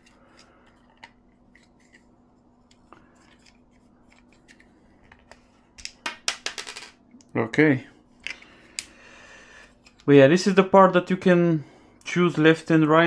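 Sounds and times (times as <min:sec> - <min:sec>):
plastic parts clicking and rubbing: 0:00.0 - 0:06.1
faint steady hum: 0:00.0 - 0:13.0.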